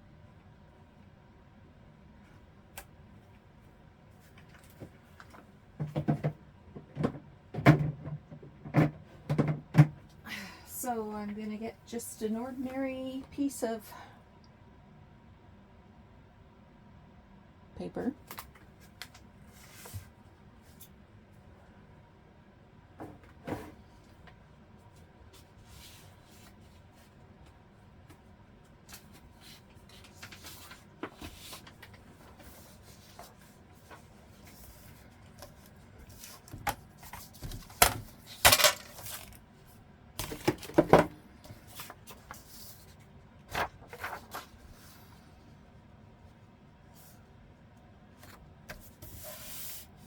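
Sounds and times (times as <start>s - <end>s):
paper rustling: 28.9s - 39.4s, 41.5s - 45.2s.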